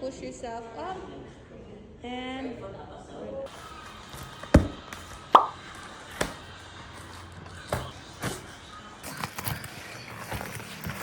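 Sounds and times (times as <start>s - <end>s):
sharp knocks and thumps: 4.4s - 5.6s.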